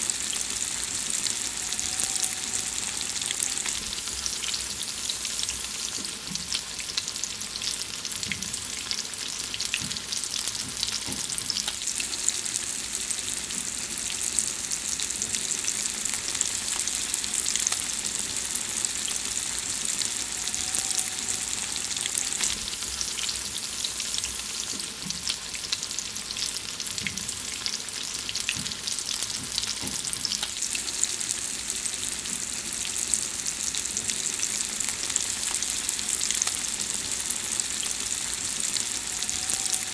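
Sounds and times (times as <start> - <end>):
food sizzling in hot fat: 0.0 - 39.9.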